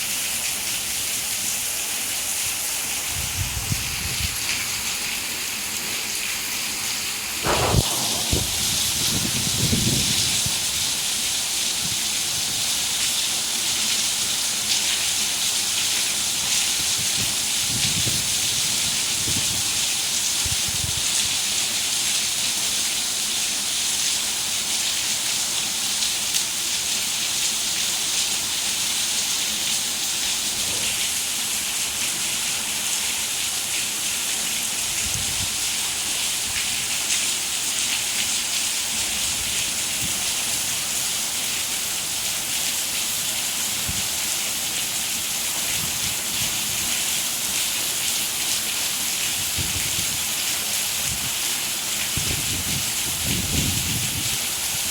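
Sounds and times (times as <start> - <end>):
heavy rain: 0.0 - 54.9
faint low rumbles: 7.5 - 10.2.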